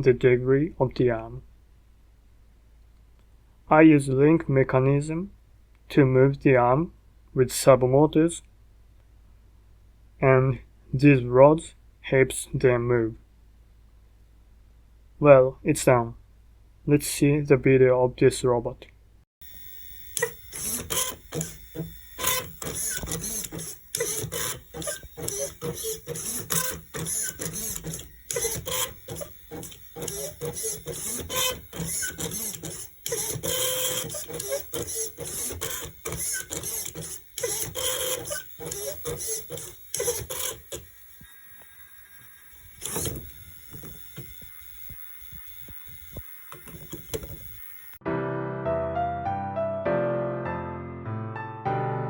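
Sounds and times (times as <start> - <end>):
robot servo whirring and clacking: 19.5 - 48.0.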